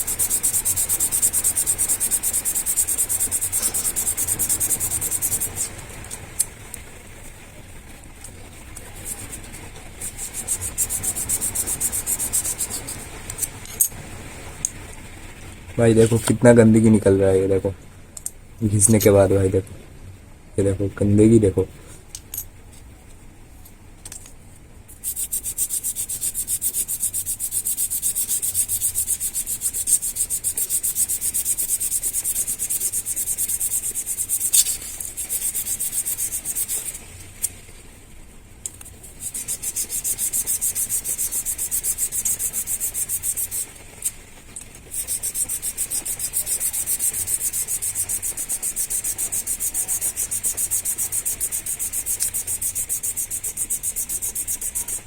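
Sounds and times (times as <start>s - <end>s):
pads rubbing on sandpaper: 0.0s - 5.7s, 8.8s - 13.5s, 24.9s - 37.1s, 38.8s - 44.2s, 44.8s - 55.0s.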